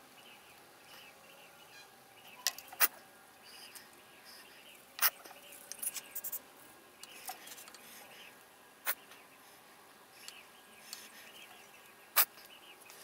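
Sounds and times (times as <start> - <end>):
faint bird chirps: 0.1 - 6.4.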